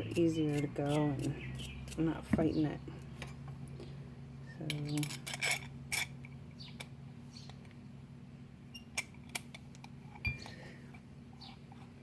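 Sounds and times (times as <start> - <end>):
small metal parts clicking and clinking: 4.7 - 6.9.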